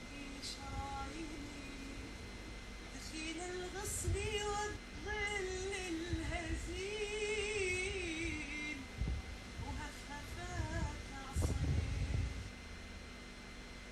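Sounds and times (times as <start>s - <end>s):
woman singing: 0.0s - 2.1s, 2.9s - 9.0s, 9.6s - 12.5s.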